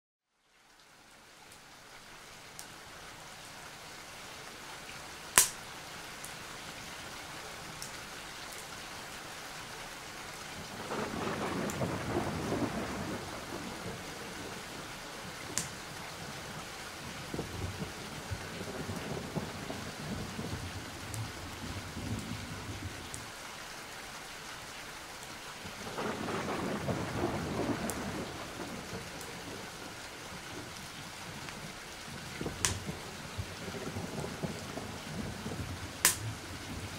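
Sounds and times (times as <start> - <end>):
steady rain: 0.2 - 36.9
sharp thunder crack: 10.8 - 14.0, 25.9 - 29.0
rolls of thunder: 10.8 - 14.9, 25.8 - 29.8.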